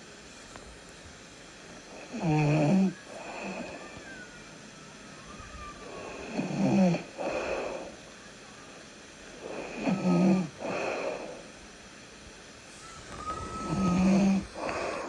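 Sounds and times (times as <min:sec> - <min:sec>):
person snoring: 0:01.9 - 0:03.9, 0:09.4 - 0:11.4, 0:13.3 - 0:15.0
soft breath out: 0:12.7 - 0:15.0.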